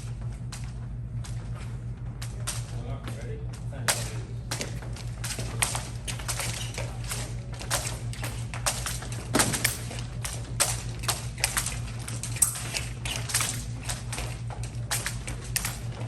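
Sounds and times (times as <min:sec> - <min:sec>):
fencers' footwork: 0:00.0 - 0:16.0
steady low hum: 0:00.0 - 0:16.0
fencing blades clicking: 0:02.2 - 0:02.8, 0:03.9 - 0:16.0.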